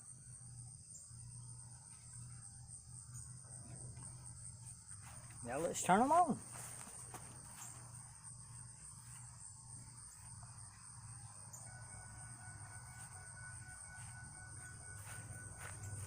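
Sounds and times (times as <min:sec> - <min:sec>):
insects chirring: 0:00.0 - 0:16.0
low steady hum: 0:00.0 - 0:16.0
thin steady tone: 0:00.0 - 0:16.0.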